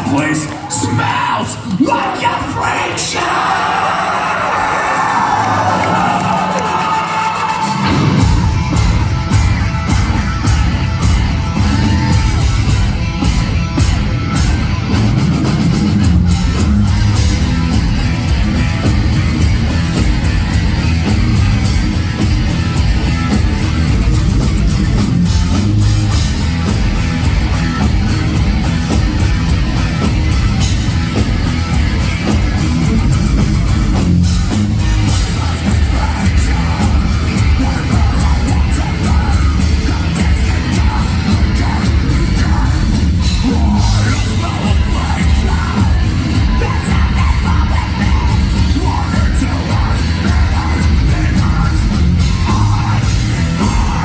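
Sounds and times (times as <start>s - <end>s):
distorted electric guitars: 0.0s - 54.0s
drum kit playing: 6.0s - 54.0s.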